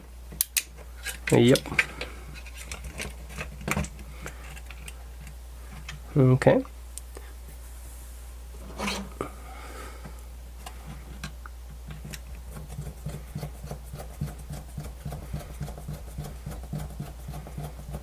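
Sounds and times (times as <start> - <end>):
low hum: 7.0 - 18.0.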